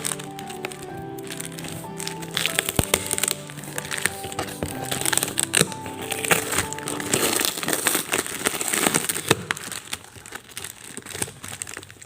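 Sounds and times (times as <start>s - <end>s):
background music: 0.0s - 9.2s
packaging crinkling: 0.0s - 12.0s.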